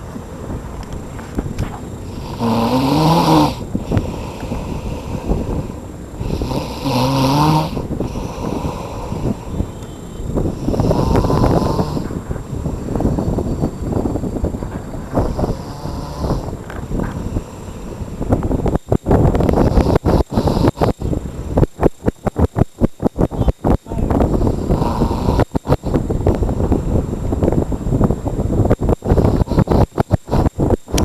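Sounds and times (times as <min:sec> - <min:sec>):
man snoring: 0:02.0 - 0:09.7, 0:10.4 - 0:12.2, 0:15.2 - 0:18.2, 0:19.4 - 0:21.1, 0:24.2 - 0:26.0.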